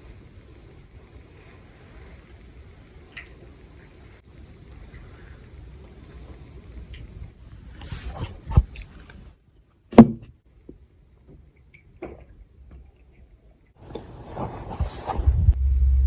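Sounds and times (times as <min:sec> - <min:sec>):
faint low rumble: 0:12.4 - 0:16.0.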